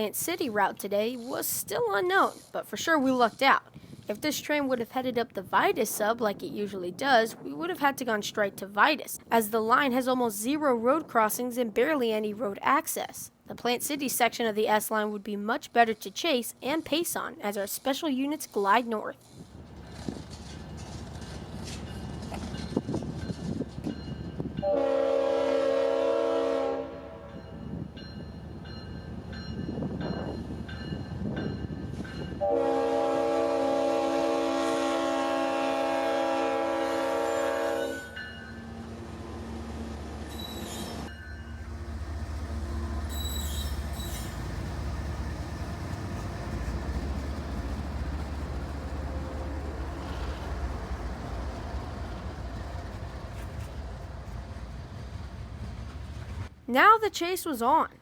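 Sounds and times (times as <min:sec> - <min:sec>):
diesel locomotives rumbling: 0:19.4 - 0:56.6
locomotive air horn blasts: 0:24.6 - 0:27.3, 0:32.4 - 0:38.2.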